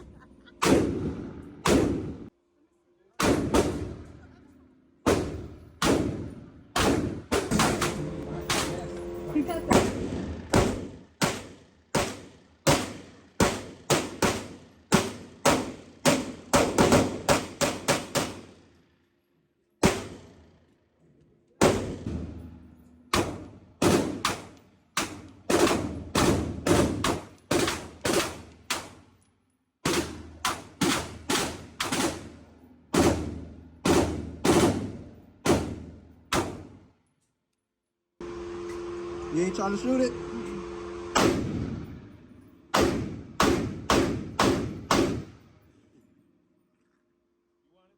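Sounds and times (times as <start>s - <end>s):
gunshots echoing indoors: 0.6s - 2.3s, 3.2s - 4.2s, 5.0s - 18.8s, 19.8s - 20.6s, 21.6s - 29.1s, 29.8s - 36.9s, 41.2s - 45.6s.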